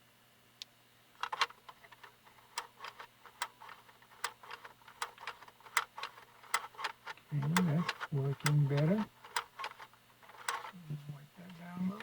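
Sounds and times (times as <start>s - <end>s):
cassette deck mechanism clicks: 1.2s - 10.7s.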